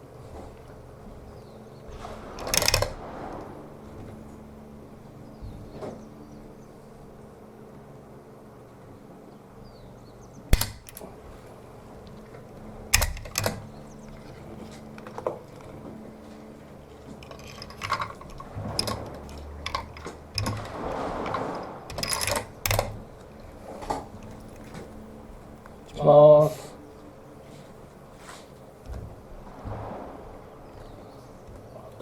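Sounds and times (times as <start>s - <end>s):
rifle gear clicking and knocking: 1.8s - 3.4s, 10.5s - 29.1s.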